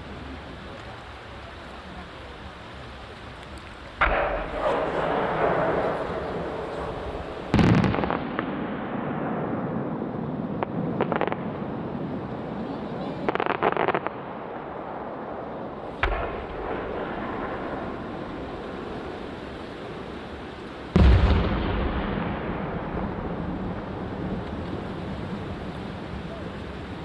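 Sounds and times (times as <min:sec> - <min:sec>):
fireworks crackling: 0:00.0 - 0:27.0
fireworks booming: 0:03.4 - 0:27.0
low rumble: 0:21.0 - 0:26.4.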